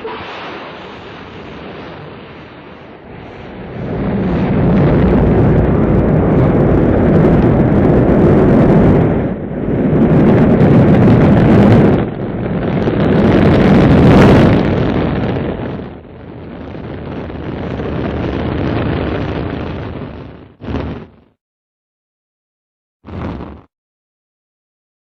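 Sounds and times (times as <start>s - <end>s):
loud rumbling roar: 0.0s - 14.9s.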